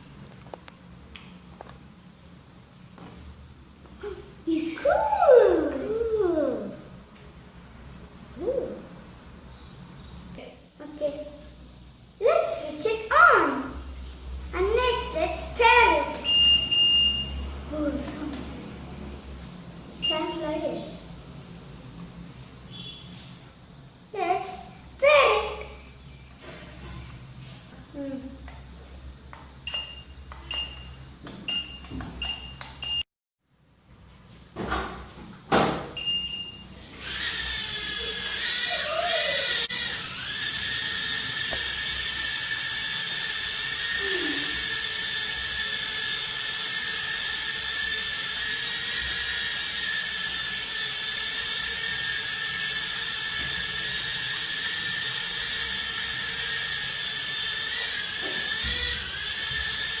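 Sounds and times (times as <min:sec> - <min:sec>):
short electronic beeps: 0:16.2 - 0:17.4, 0:29.7 - 0:33.0, 0:36.0 - 0:36.7
quadcopter motors whining: 0:36.8 - 1:00.0.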